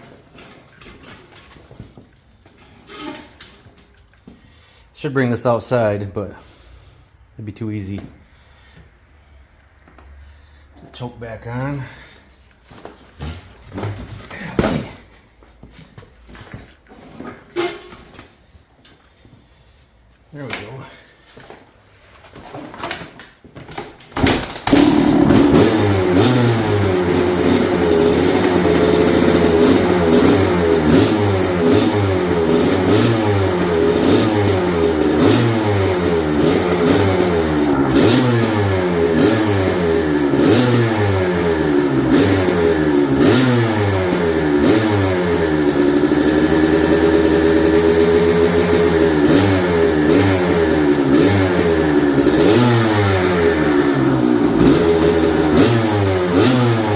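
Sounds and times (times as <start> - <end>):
two-stroke engine revving: 24.6 - 56.9.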